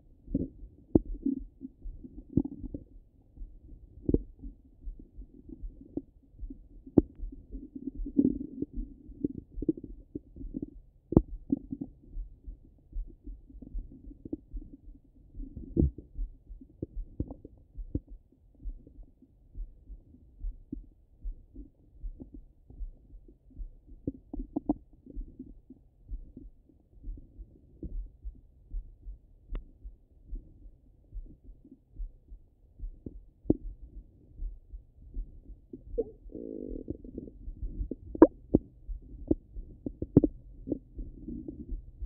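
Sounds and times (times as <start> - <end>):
heartbeat through stethoscope: 0.0 - 42.0
low bowel gurgling: 36.0 - 37.4.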